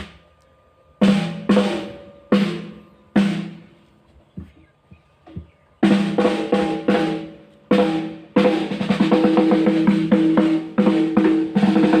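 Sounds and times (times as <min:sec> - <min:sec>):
drum kit playing: 0:01.0 - 0:03.7, 0:05.8 - 0:12.0.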